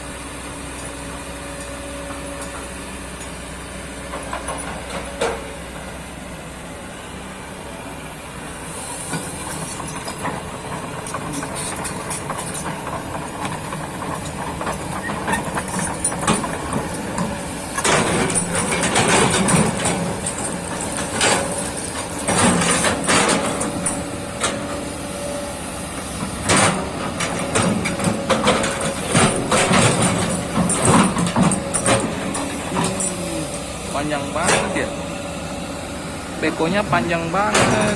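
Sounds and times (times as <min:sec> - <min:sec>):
excavator diesel engine running: 0:00.0 - 0:37.9.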